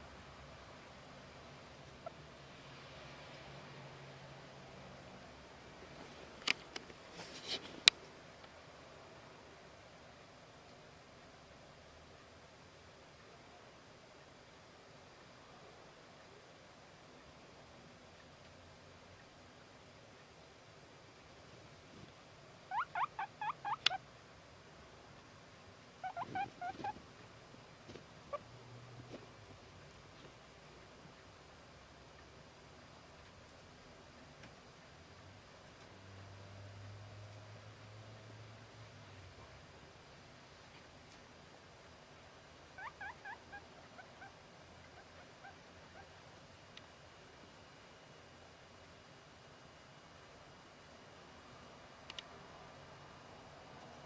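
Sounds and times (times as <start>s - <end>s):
guinea pig squeaking: 22.7s - 24.0s, 26.0s - 27.0s, 28.3s - 28.5s, 42.7s - 46.2s.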